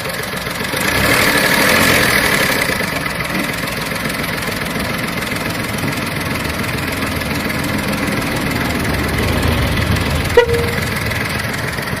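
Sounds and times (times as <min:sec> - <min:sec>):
car engine idling: 0:00.0 - 0:12.0
short beep: 0:10.4 - 0:10.9.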